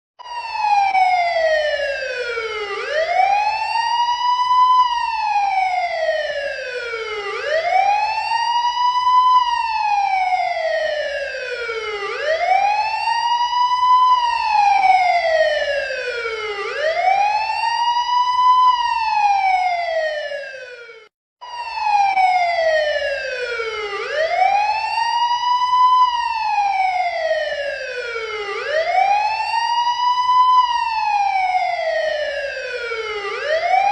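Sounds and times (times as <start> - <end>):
police siren wailing: 0.2 - 33.9.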